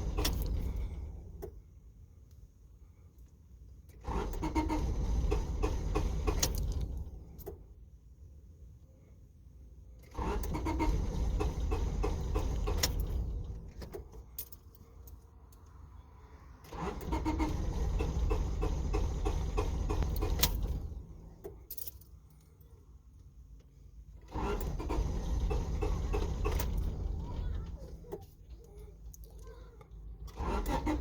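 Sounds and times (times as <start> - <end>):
car engine cranking: 0.0 - 1.6, 3.9 - 7.6, 10.0 - 14.8, 16.6 - 21.9, 24.2 - 31.0.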